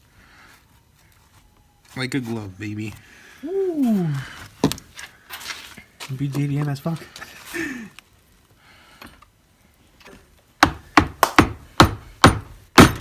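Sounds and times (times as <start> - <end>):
sharp knocks: 10.6 - 13.0.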